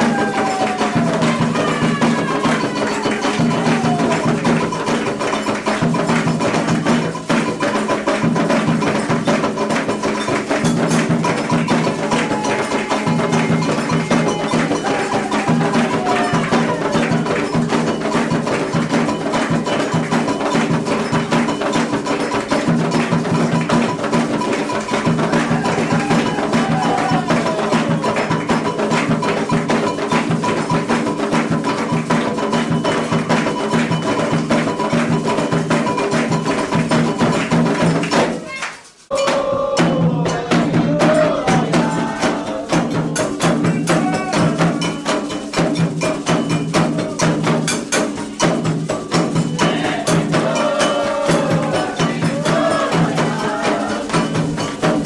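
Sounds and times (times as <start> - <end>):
voices singing: 0.0 - 5.0, 11.0 - 22.6, 24.0 - 30.6, 39.1 - 45.4, 49.0 - 55.0
struck bell: 0.0 - 38.4, 41.6 - 55.0
hand drums: 0.0 - 55.0.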